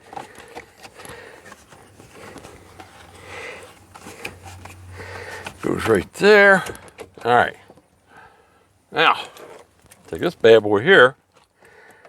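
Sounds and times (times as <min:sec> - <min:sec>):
plastic parts clicking and rustling: 0:00.0 - 0:07.8.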